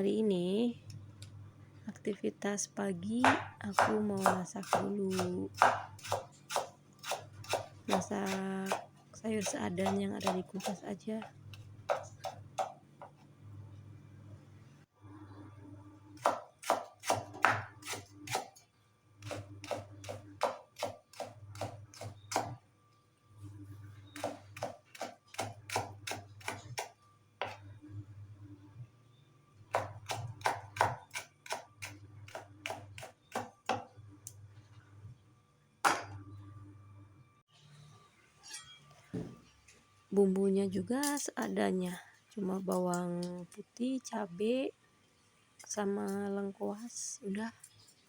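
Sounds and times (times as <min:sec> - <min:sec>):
knife chopping on cutting board: 0:03.2 - 0:10.8, 0:16.2 - 0:18.5, 0:19.3 - 0:22.6, 0:29.7 - 0:33.9.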